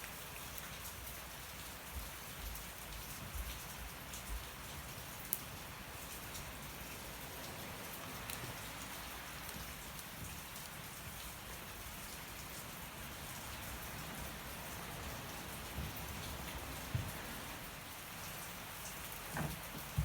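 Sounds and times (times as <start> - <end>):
steady rain falling: 0.0 - 20.0
wood fire crackling: 0.0 - 20.0.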